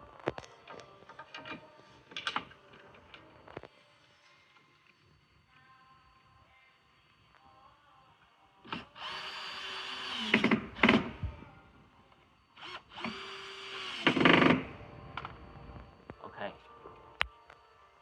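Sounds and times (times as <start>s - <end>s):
power drill driving screws: 8.7s - 11.3s, 12.6s - 14.8s.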